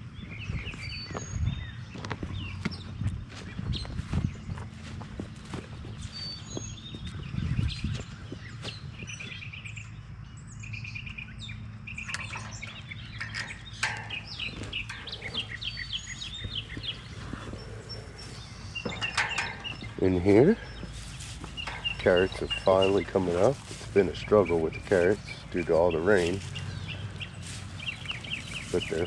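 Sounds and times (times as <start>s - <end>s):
songbirds chirping and trilling: 0.0s - 29.0s.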